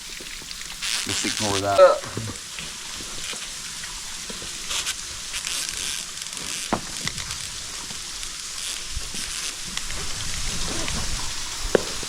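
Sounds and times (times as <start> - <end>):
waterfall hissing: 0.0 - 12.0.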